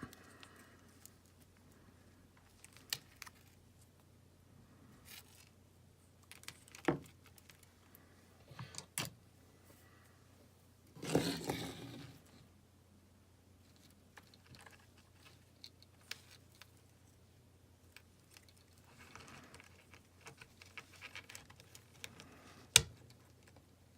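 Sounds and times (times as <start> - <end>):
rustling and scraping burst: 11.0 - 12.3.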